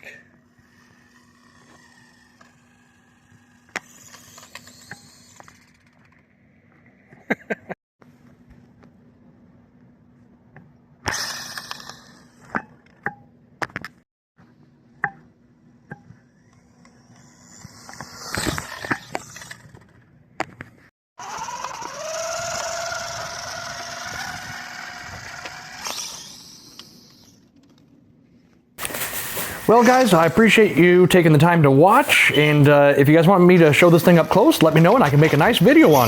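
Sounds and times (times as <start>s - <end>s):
electric motors whining: 0.0s - 7.0s, 11.0s - 12.6s, 16.2s - 20.1s, 21.2s - 27.9s, 31.8s - 36.0s.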